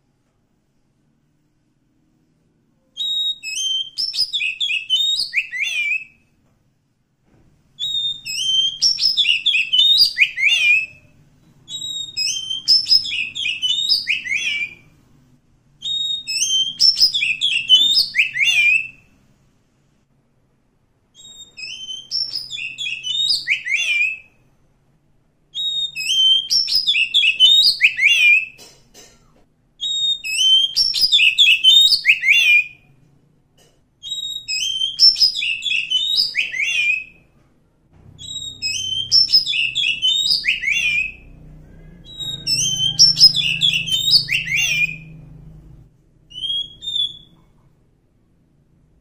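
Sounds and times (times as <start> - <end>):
magpie-robin singing: 3.0 - 6.2, 7.8 - 14.9, 15.8 - 19.1, 21.2 - 24.4, 25.6 - 28.6, 29.8 - 32.9, 34.0 - 37.2, 38.2 - 41.4, 42.0 - 45.2, 46.3 - 47.4.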